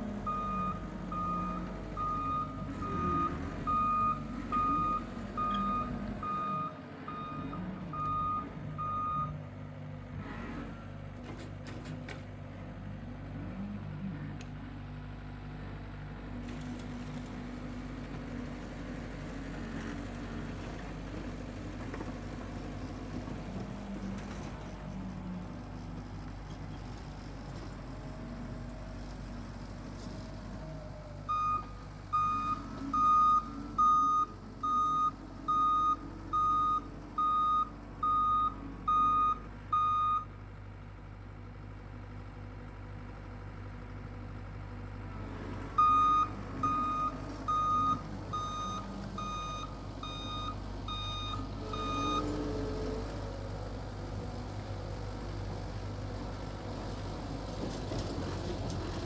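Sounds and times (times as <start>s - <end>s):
reversing alarm beeping: 0.3s - 9.4s, 31.3s - 40.3s, 45.8s - 52.5s.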